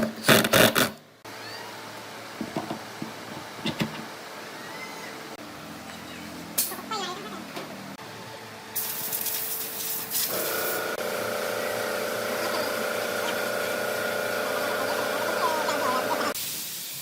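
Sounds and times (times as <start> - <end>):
power tool hissing: 8.8 - 17.0
steady motor hum: 10.3 - 16.4.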